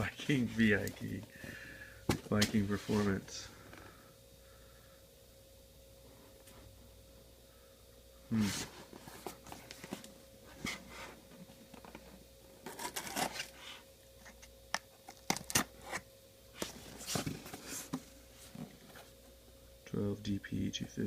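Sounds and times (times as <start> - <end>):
faint steady hum: 0.0 - 21.0
packaging rustling and scraping: 8.4 - 14.5, 16.6 - 19.2.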